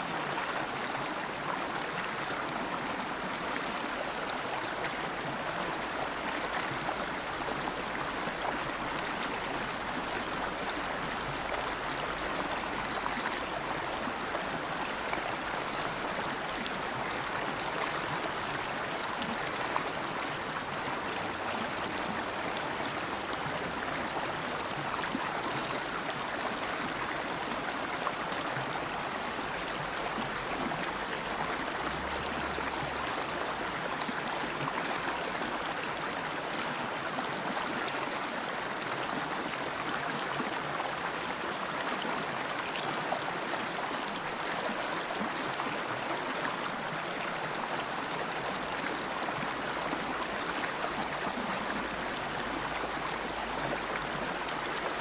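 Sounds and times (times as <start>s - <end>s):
river water flowing over rocks: 0.0s - 55.0s.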